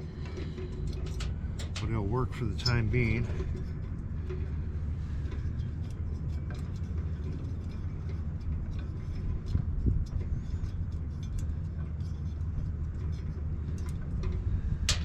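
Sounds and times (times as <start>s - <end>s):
clicks and knocks of parts handled: 0.0s - 2.0s, 5.2s - 15.0s
steady low rumble: 0.0s - 15.0s.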